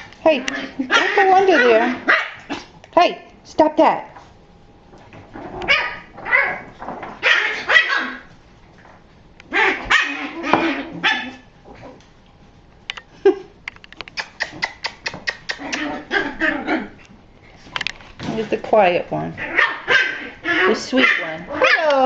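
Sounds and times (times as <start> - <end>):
puppies barking and yipping: 0.8 - 2.6, 5.6 - 8.3, 9.5 - 11.5, 19.4 - 22.0.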